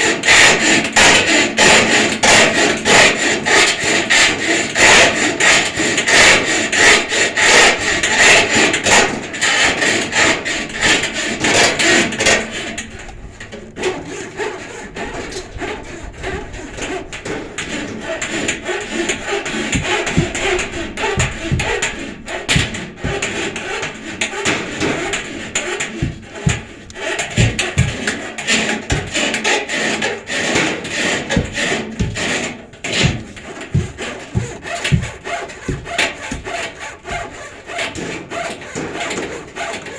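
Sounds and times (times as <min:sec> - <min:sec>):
hand saw cutting wood: 0:00.0 - 0:39.9.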